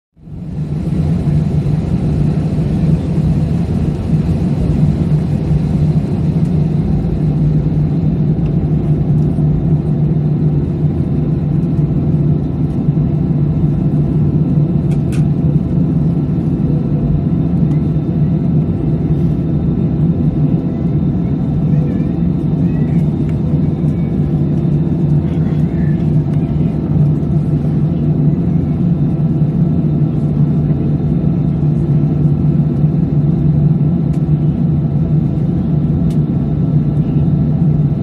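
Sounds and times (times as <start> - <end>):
jet engines rumbling in cabin: 0.2 - 38.0.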